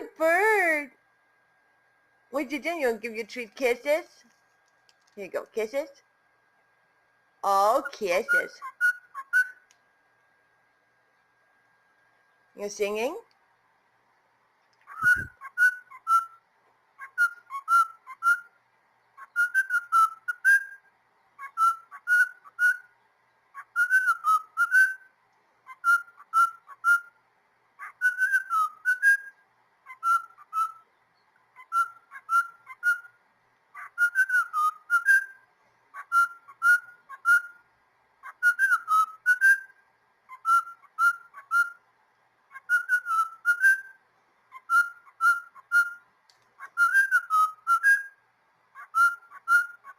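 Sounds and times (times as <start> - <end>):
cockatiel whistling: 8.1 - 9.7, 14.8 - 16.4, 17.0 - 22.9, 23.5 - 27.2, 27.8 - 30.9, 31.5 - 37.6, 38.2 - 41.8, 42.5 - 48.2, 48.8 - 49.9.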